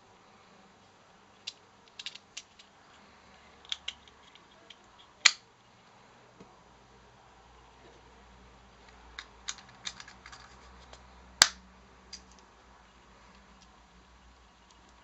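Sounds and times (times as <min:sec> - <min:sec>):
sharp plastic snap: 0:11.4 - 0:11.6.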